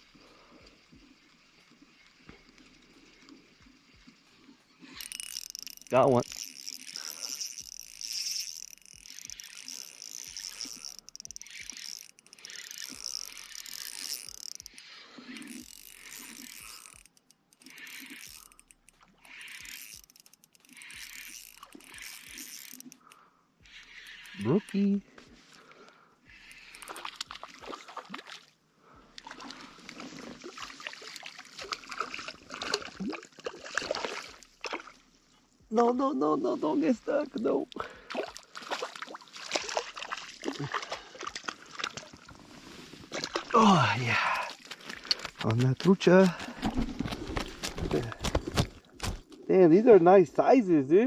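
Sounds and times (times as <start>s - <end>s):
fishing reel whirring: 0.0s - 25.6s, 26.2s - 27.8s, 29.2s - 37.0s, 37.6s - 42.4s
reel ticking: 0.0s - 28.4s, 29.0s - 36.1s
fish splashing in water: 29.2s - 35.1s, 37.9s - 42.4s.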